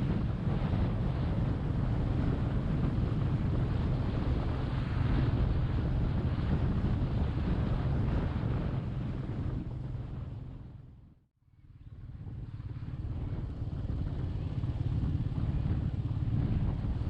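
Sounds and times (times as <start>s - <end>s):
wind buffeting microphone: 0.0s - 11.1s, 11.8s - 17.0s
motorcycle engine running: 11.8s - 17.0s.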